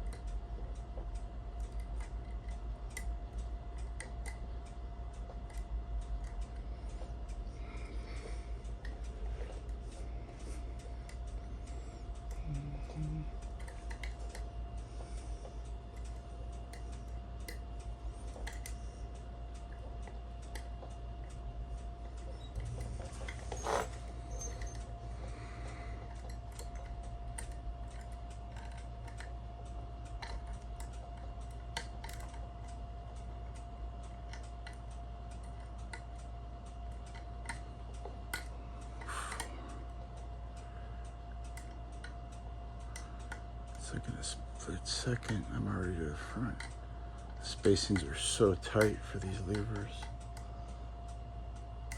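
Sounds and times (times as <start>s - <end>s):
steady low hum: 0.0s - 51.9s.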